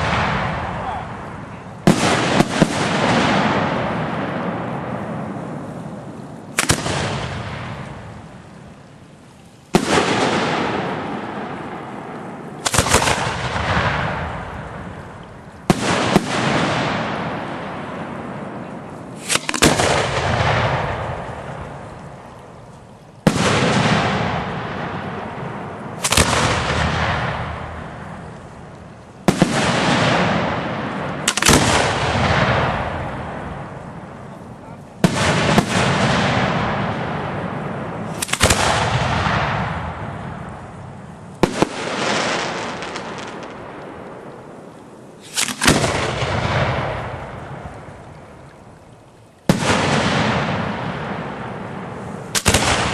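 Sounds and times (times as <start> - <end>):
firework bangs: 0.0 - 52.9
firework rumble and crackle: 0.0 - 52.9.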